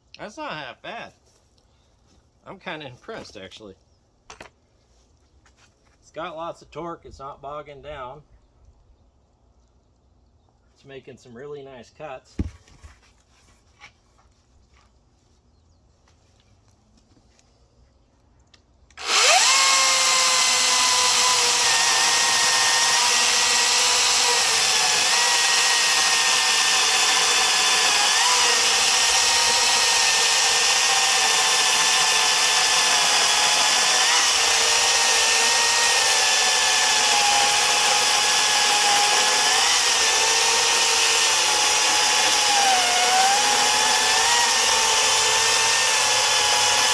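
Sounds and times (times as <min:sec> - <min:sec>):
battery chainsaw cutting wood: 0:18.9 - 0:46.9.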